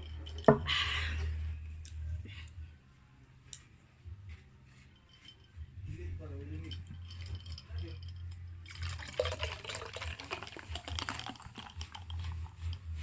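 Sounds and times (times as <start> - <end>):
person chewing and eating: 8.7 - 13.0.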